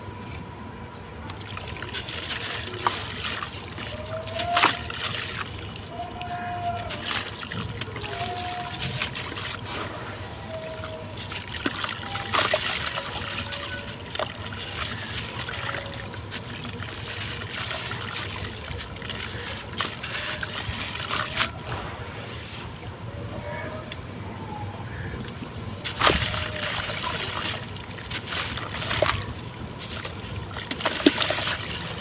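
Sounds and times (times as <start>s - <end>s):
water splashing and sloshing: 0.0s - 32.0s
blocks crackling in water: 1.2s - 21.9s, 25.1s - 32.0s.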